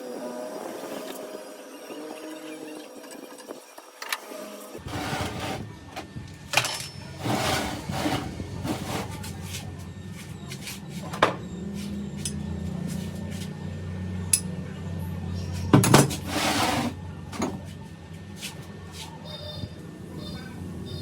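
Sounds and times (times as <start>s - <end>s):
electric motor hum: 4.4s - 10.6s
handling knocks and scrapes: 4.8s - 13.6s.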